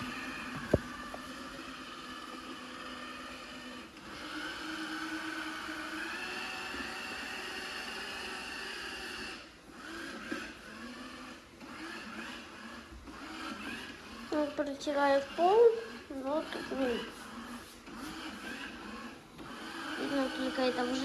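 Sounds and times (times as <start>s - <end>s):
robot vacuum motor whir: 0.0s - 21.0s.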